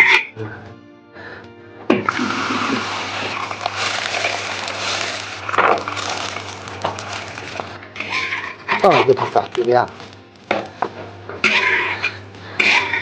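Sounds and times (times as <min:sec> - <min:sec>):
dough sizzling in oil: 0:02.1 - 0:10.0.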